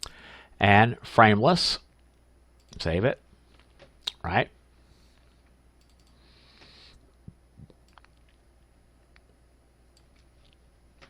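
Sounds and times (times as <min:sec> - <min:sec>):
computer mouse clicks: 0:05.8 - 0:06.2.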